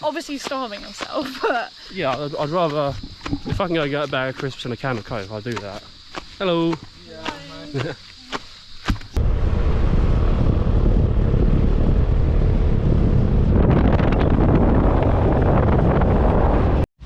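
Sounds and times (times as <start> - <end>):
wind buffeting microphone: 1.9 - 4.6, 9.1 - 16.8.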